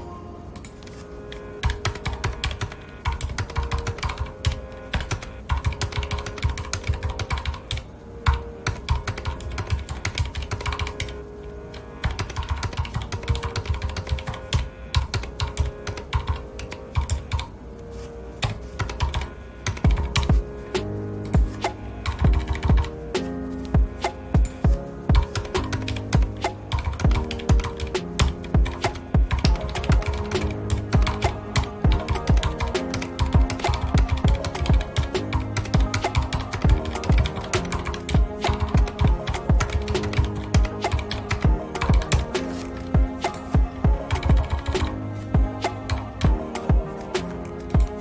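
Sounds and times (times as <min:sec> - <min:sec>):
mechanical keyboard typing: 0:01.6 - 0:11.2, 0:12.0 - 0:17.5, 0:18.4 - 0:20.3.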